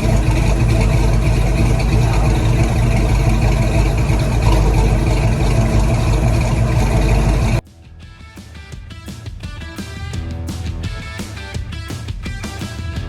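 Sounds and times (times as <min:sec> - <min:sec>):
car engine idling loudly: 0:00.0 - 0:07.6.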